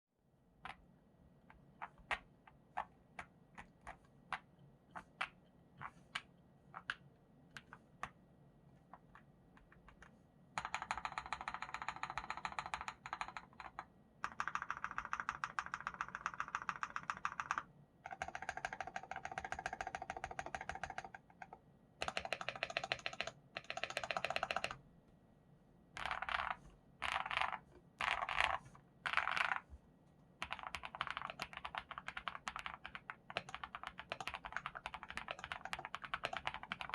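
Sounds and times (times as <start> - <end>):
mechanical keyboard typing: 10.6 - 24.8, 26.0 - 29.7, 30.4 - 36.9.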